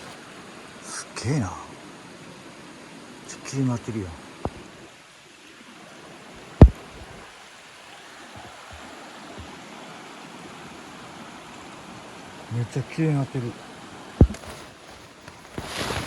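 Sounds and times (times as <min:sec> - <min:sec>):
faint low taps: 0:06.6 - 0:07.2, 0:08.4 - 0:09.6, 0:14.2 - 0:14.7.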